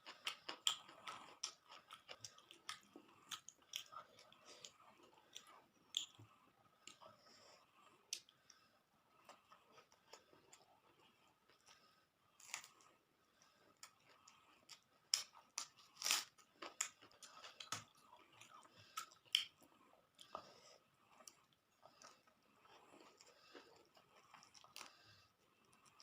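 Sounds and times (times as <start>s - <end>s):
chewing and crunching: 0.0s - 26.0s.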